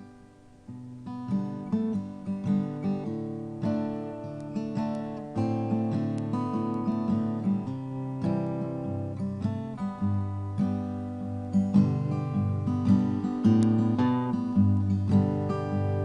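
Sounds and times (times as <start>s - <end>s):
acoustic guitar picking and strumming: 0.0s - 16.0s.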